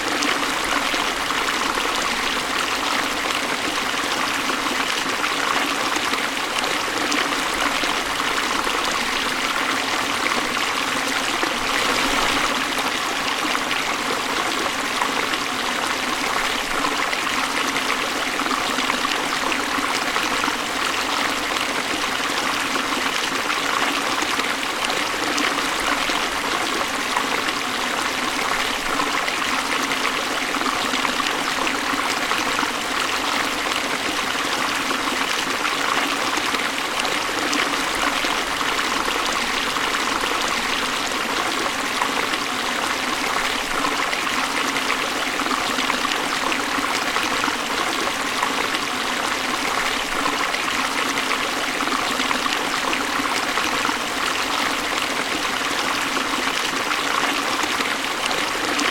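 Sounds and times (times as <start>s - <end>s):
waterfall rushing: 10.0s - 14.7s.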